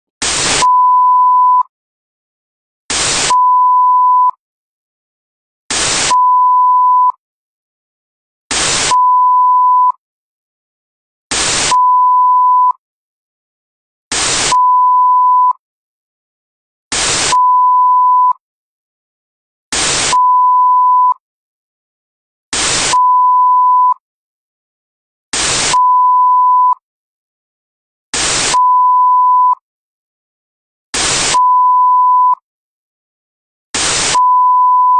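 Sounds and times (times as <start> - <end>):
burst of static: 0.2 - 0.6, 2.9 - 3.3, 5.7 - 6.1, 8.5 - 8.9, 11.3 - 11.7, 14.1 - 14.5, 16.9 - 17.3, 19.8 - 20.1, 22.6 - 23.0, 25.4 - 25.8, 28.2 - 28.6, 31.0 - 31.4, 33.8 - 34.2
steady high beep tone: 34.1 - 34.9.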